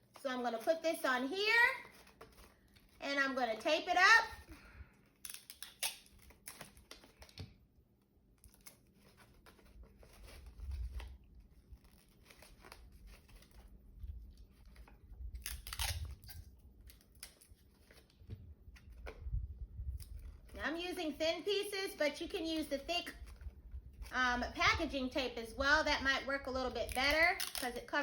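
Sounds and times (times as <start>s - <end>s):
paper crinkling: 1.4s - 3.0s, 4.9s - 19.2s
tape tearing from roll: 5.1s - 7.4s, 8.4s - 13.7s, 15.3s - 18.2s, 26.9s - 28.0s.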